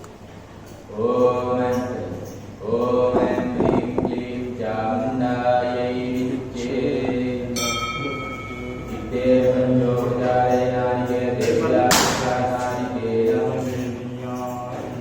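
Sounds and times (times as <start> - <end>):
voices chanting mantras: 0.8 - 15.0
ringing tone: 7.6 - 10.7.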